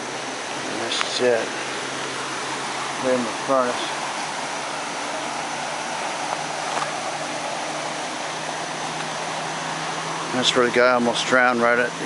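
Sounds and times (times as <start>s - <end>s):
floodwater rushing: 0.0s - 12.0s.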